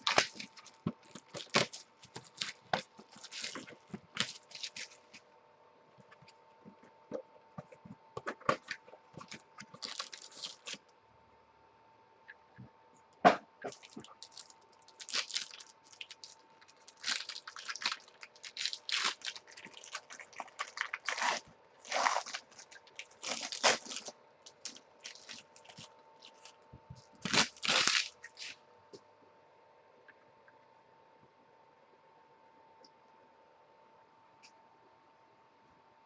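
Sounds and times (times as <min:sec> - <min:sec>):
packaging crinkling and tearing: 0:00.0 - 0:05.2, 0:08.3 - 0:10.8, 0:13.7 - 0:28.6.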